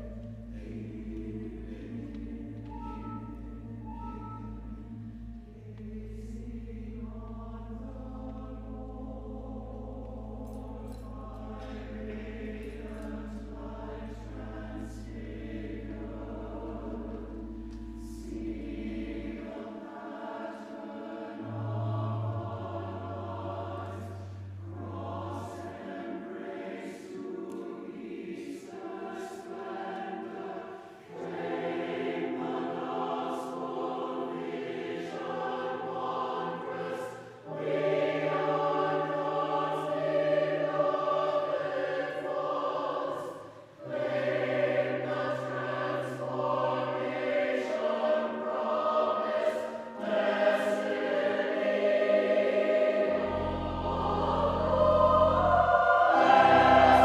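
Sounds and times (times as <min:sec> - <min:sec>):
choir singing: 0:00.0 - 0:57.0
low held accompaniment notes: 0:00.0 - 0:57.0.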